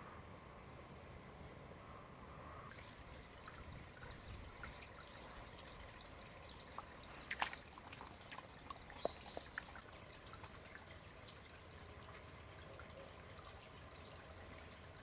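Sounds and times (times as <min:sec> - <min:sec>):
water drops plinking: 0:02.7 - 0:10.9
water trickling: 0:02.7 - 0:15.0.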